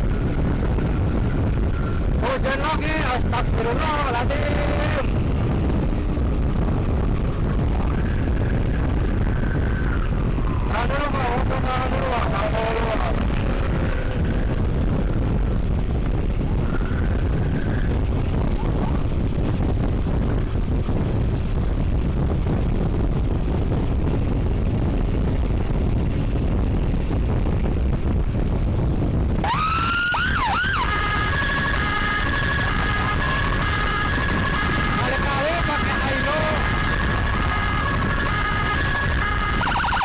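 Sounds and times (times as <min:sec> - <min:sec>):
faint siren wail: 0:00.0 - 0:02.4, 0:04.7 - 0:15.5, 0:16.2 - 0:19.2, 0:29.4 - 0:40.0
motorcycle wind and road rumble: 0:00.0 - 0:40.0
electronic emergency siren: 0:05.1 - 0:15.2, 0:16.4 - 0:19.0, 0:29.4 - 0:40.0.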